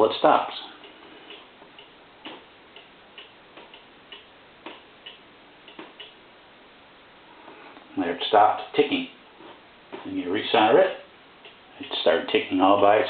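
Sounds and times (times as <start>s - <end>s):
clock pendulum ticking: 0.5s - 6.3s, 11.4s - 11.7s.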